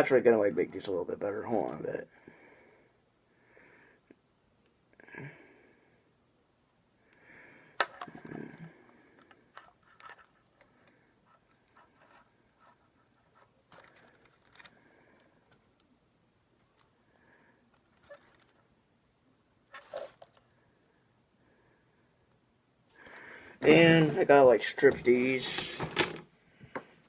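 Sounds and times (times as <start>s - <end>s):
wires and tools clicking: 7.8s - 11.8s, 13.4s - 16.0s.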